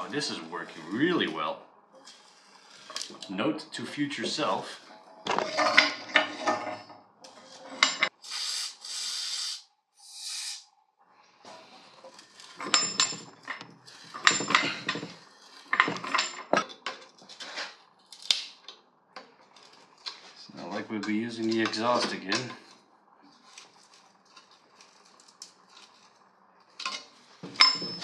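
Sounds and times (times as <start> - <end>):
metal tools clinking and knocking: 5.3 - 6.9, 7.7 - 8.1, 12.4 - 17.1, 26.8 - 28.0
hissing bursts: 8.2 - 10.7.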